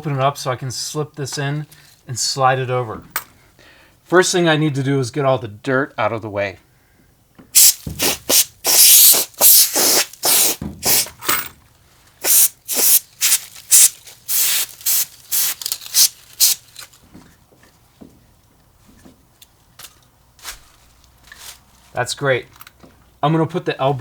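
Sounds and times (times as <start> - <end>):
hissing scraping strokes: 7.6 - 11.1, 12.2 - 16.6.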